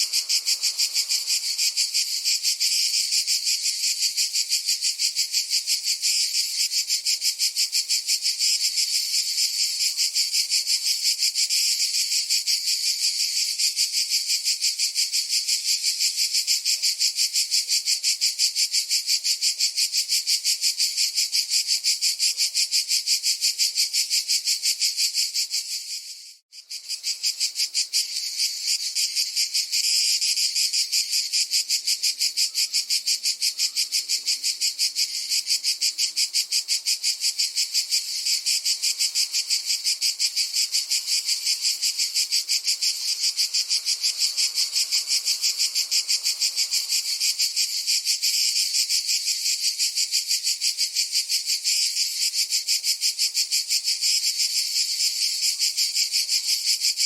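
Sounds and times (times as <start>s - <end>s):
cicada buzzing: 0.0s - 57.0s.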